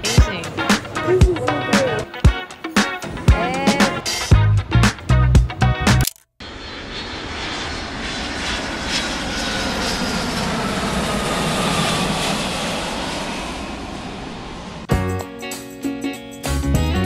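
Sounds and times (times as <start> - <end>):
airliner engines roaring: 0.0 - 4.3, 6.4 - 14.9.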